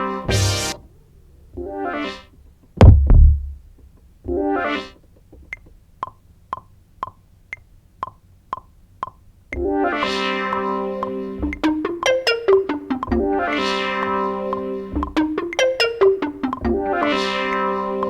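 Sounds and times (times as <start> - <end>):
synthesizer chord stabs: 0.0 - 0.8, 9.6 - 18.0
heavy low bass hit: 2.8 - 3.6.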